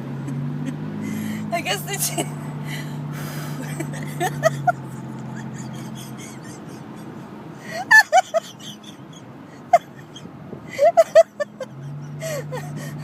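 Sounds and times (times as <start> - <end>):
woman hiccuping and laughing: 3.6 - 6.8.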